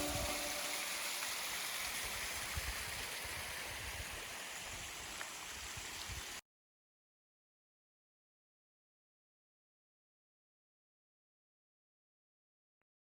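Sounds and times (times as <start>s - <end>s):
flowing water rushing: 0.0s - 6.4s.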